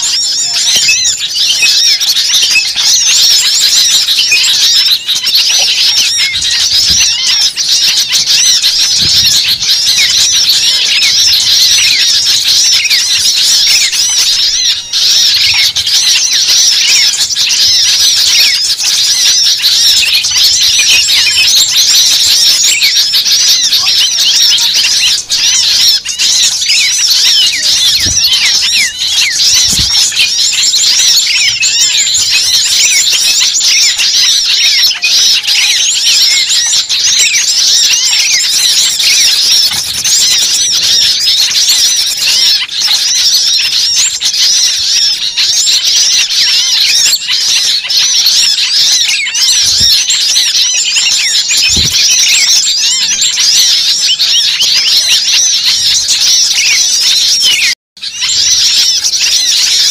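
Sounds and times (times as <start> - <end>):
chorus of small birds chirping: 0.0 - 59.9.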